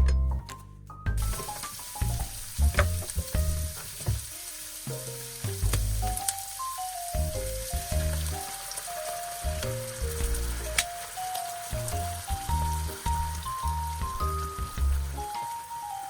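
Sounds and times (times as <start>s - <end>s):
background music: 0.0s - 16.0s
food sizzling in a frying pan: 1.2s - 16.0s.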